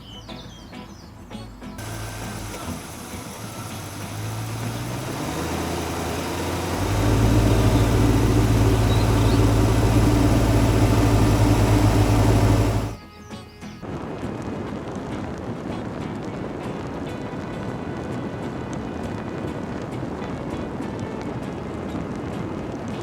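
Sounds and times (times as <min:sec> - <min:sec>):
car engine humming: 0:01.8 - 0:13.0.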